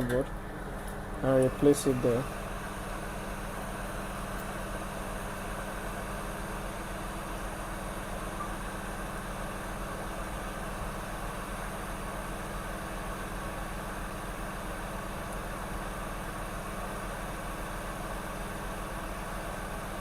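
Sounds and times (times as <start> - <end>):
fan whirring: 0.0 - 8.2
low electrical hum: 0.0 - 20.0.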